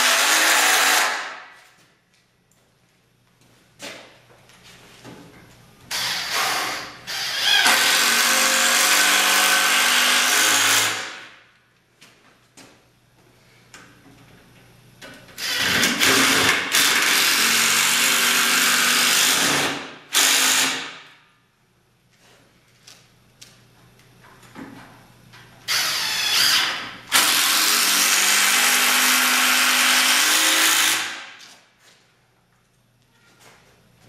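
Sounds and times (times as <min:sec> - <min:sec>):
power drill driving screws: 0:05.9 - 0:11.1, 0:15.4 - 0:20.8, 0:25.7 - 0:31.2.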